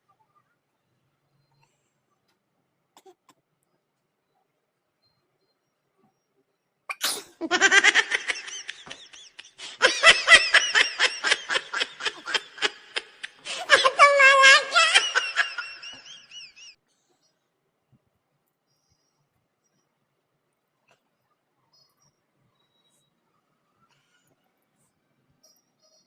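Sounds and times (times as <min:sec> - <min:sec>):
woman laughing: 0:07.4 - 0:16.7.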